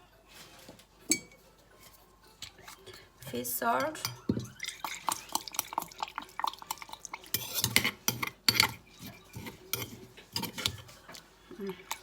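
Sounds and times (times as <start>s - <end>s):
spoon clinking against bowl: 1.1s - 1.4s, 3.8s - 10.8s.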